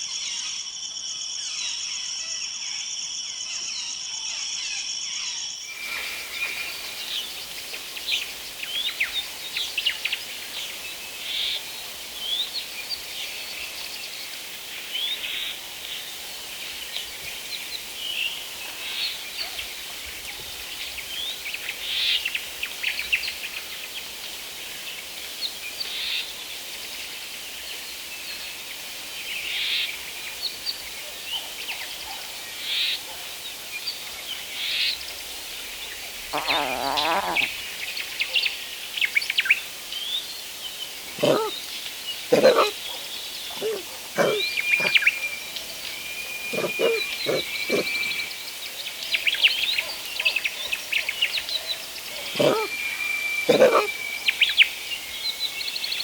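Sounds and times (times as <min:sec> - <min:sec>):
steady high hiss: 0:05.6 - 0:56.0
birds chirping and whistling: 0:43.6 - 0:48.4.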